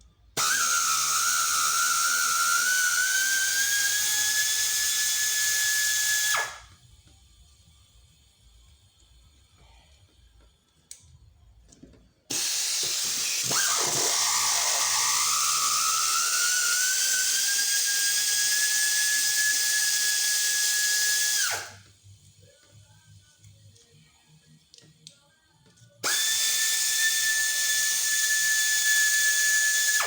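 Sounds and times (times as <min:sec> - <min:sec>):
power drill whining: 0:00.4 - 0:06.7, 0:12.3 - 0:21.9, 0:26.0 - 0:30.0.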